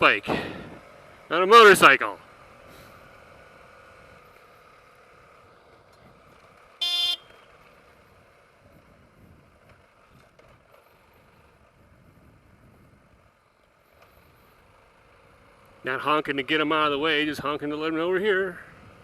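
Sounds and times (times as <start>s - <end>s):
motorcycle running: 0.0s - 19.0s
motorcycle horn beep: 6.8s - 7.5s.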